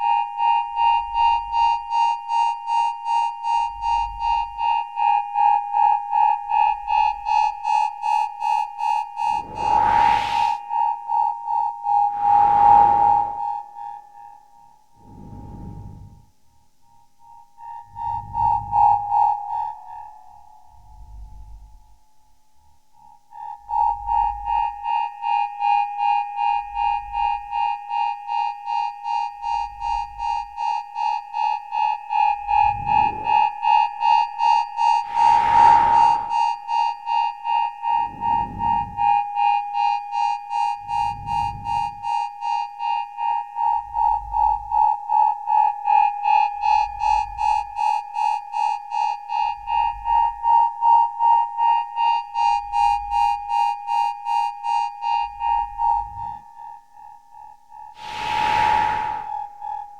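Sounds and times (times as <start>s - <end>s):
swelling whooshes: 9.2s - 10.6s, 12.1s - 13.6s, 15.0s - 16.1s, 32.5s - 33.5s, 34.9s - 36.6s, 58.0s - 59.7s
deep bass pulse: 9.3s - 10.6s, 32.5s - 33.4s.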